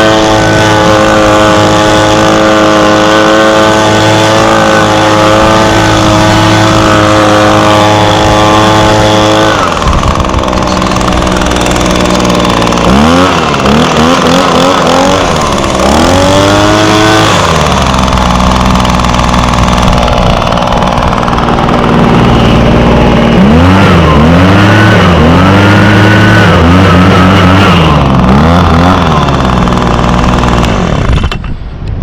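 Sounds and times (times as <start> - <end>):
leaf blower engine revving: 0.0 - 31.6.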